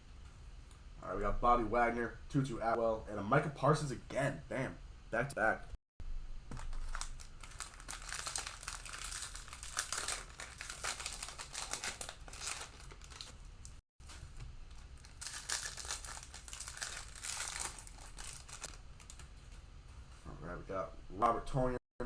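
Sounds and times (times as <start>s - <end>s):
cellophane wrapper crinkling and tearing: 6.5s - 19.3s.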